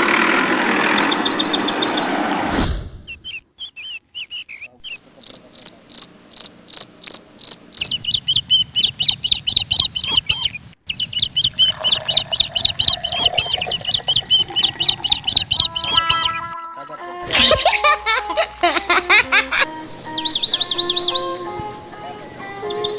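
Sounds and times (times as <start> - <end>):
high-pitched chirping calls: 0.8 - 2.2, 3.1 - 16.8, 19.6 - 22.9.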